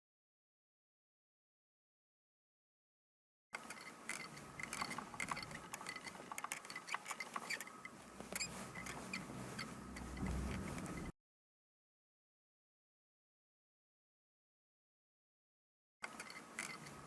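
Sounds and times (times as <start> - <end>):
irregular clicking and ticking: 3.6 - 11.1
low rumble: 9.9 - 11.1.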